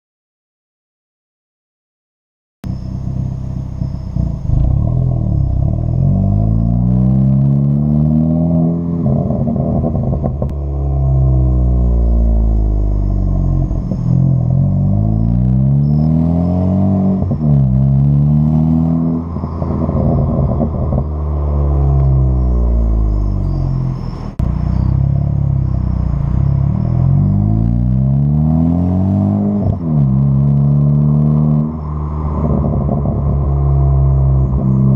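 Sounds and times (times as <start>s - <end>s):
car engine revving: 2.7s - 34.9s
exhaust crackles and pops: 9.0s - 13.0s, 19.2s - 23.5s, 29.4s - 34.9s.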